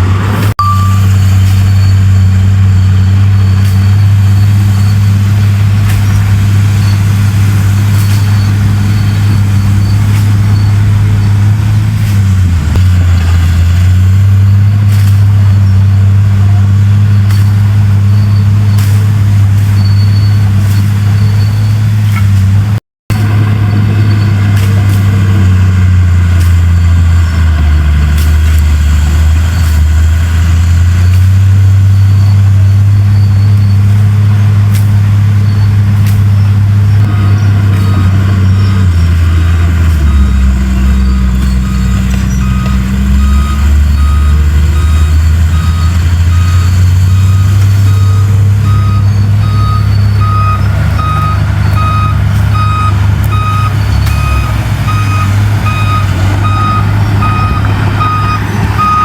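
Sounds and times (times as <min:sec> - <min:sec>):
diesel machinery engine: 0:00.0 - 0:59.0
reversing alarm beeping: 0:00.6 - 0:11.6, 0:35.3 - 0:59.0.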